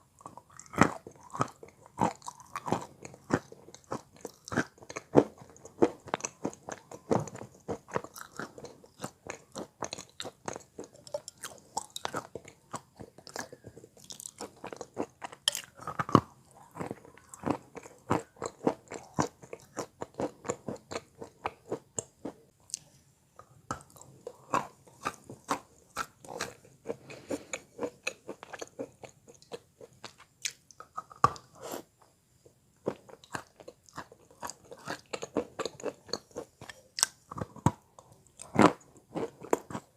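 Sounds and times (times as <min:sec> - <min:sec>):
chewing chalk crunching: 0:00.2 - 0:22.9, 0:32.9 - 0:39.9.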